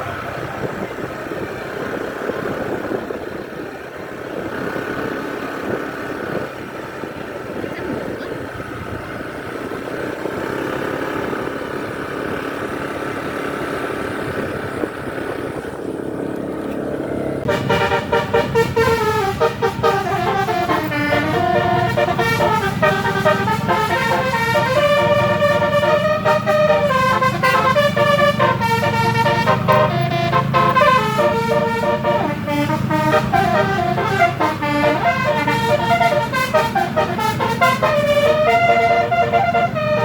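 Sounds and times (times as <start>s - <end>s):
bus engine drone: 0.0s - 40.0s
multi-tone horn playing a tune: 17.4s - 40.0s.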